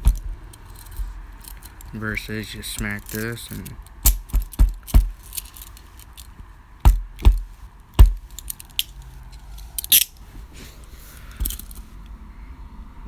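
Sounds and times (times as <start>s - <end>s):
handcuffs knocking metallically: 0.0s - 2.0s, 2.7s - 10.2s, 11.4s - 11.8s
faint handcuff clicks: 2.8s - 10.2s, 11.1s - 12.2s.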